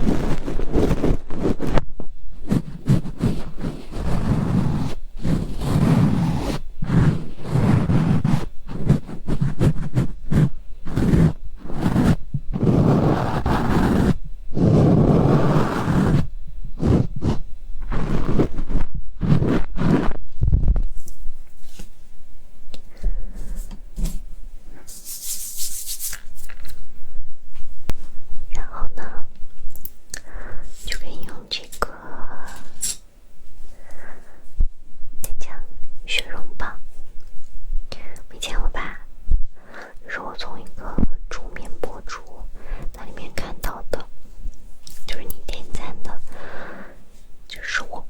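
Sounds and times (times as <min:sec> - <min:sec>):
ear-cleaning tool scraping microphone: 0:00.0 - 0:20.9.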